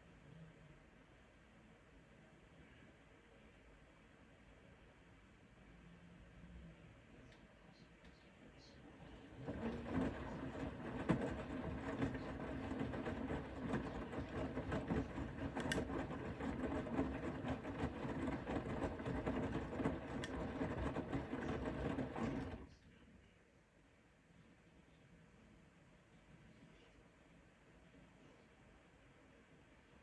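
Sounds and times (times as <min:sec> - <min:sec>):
washing machine drum motor hum: 0:08.8 - 0:22.8
laundry knocking in drum: 0:09.4 - 0:22.6.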